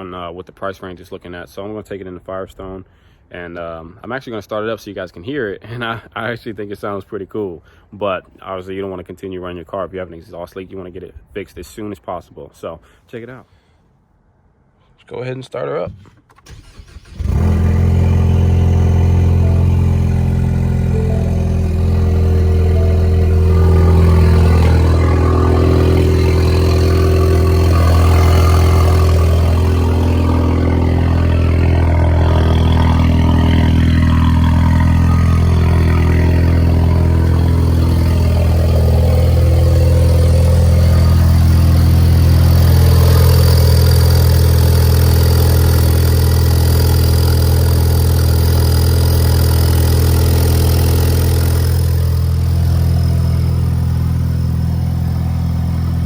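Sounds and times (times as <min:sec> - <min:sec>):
car engine idling: 0:16.3 - 0:56.0.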